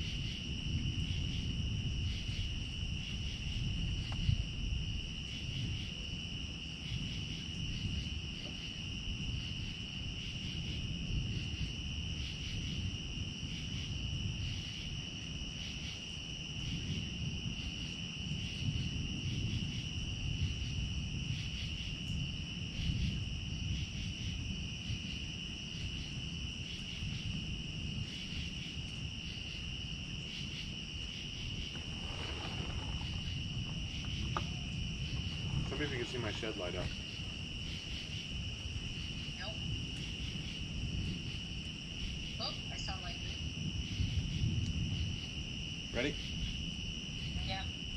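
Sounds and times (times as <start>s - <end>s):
crickets chirping: 0.0s - 47.9s
low outdoor noise: 21.4s - 47.9s.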